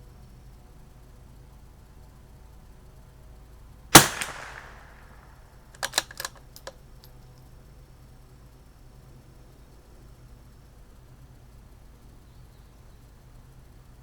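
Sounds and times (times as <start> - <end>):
rifle bolt clicking: 4.0 - 5.0, 5.8 - 6.7
rifle shot: 4.0 - 5.2, 5.8 - 6.4.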